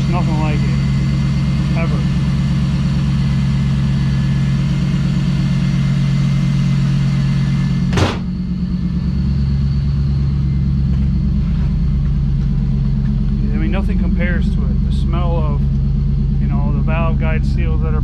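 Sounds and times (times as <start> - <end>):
car engine idling: 0.0 - 18.0
sharp knock: 7.9 - 8.4.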